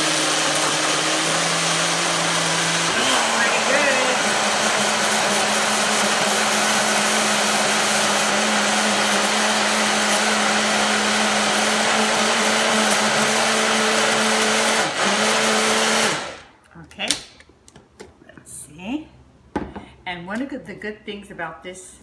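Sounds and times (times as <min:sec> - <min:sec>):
blender motor whirring: 0:00.0 - 0:16.5.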